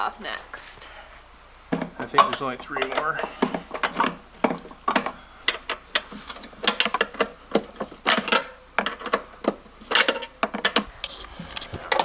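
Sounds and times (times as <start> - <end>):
hand tools clicking on metal: 2.0 - 4.2.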